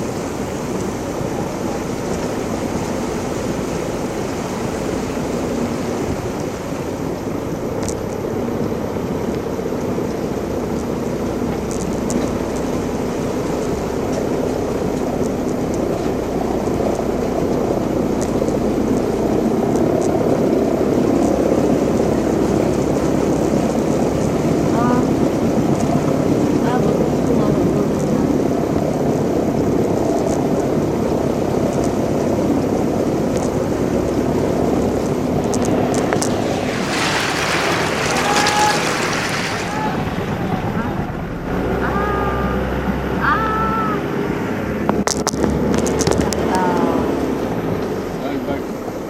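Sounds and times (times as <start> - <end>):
engine running: 0.0 - 49.0
rushing noise: 32.3 - 43.2.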